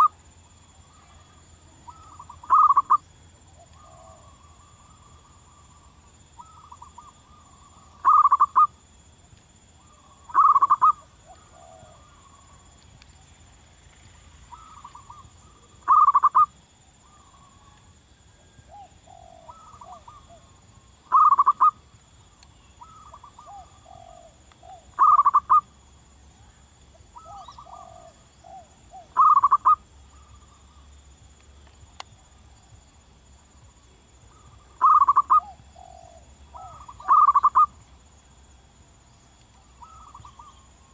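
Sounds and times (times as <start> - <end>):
dove cooing: 0.9 - 3.0, 3.6 - 5.6, 6.4 - 8.7, 9.8 - 12.4, 14.5 - 16.5, 18.4 - 21.8, 22.8 - 25.6, 27.2 - 30.4, 34.3 - 37.8, 39.8 - 40.6.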